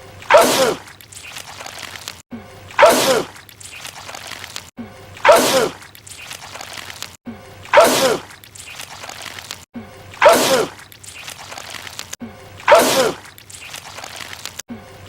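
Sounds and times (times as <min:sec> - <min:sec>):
man sneezing: 0:02.8 - 0:03.3, 0:12.7 - 0:13.2.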